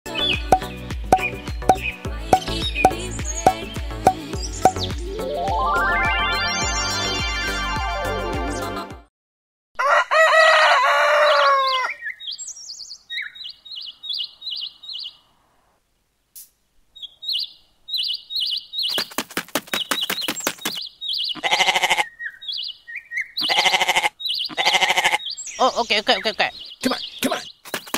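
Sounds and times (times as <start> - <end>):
small birds chirping: 0.1 - 5.0, 11.4 - 15.4, 16.9 - 27.9
rooster crowing: 9.8 - 12.1
pulsing bleat: 21.4 - 22.1, 23.4 - 25.2.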